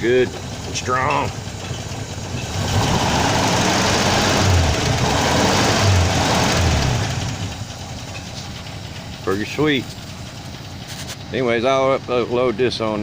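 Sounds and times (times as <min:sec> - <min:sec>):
car engine running: 0:00.0 - 0:13.0.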